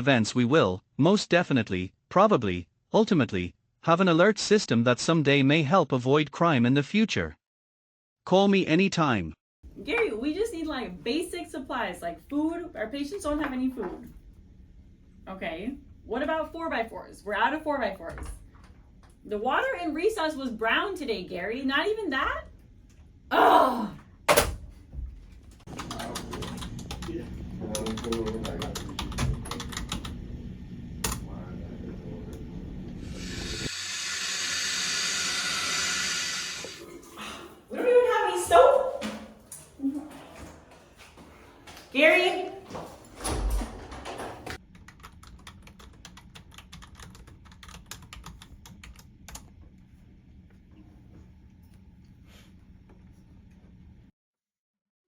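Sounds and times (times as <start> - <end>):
keyboard typing: 25.7 - 30.2, 44.6 - 49.5.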